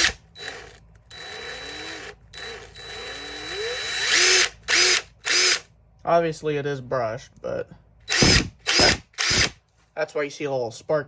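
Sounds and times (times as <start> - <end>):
impact driver motor whining: 0.0 - 5.7, 8.1 - 9.6.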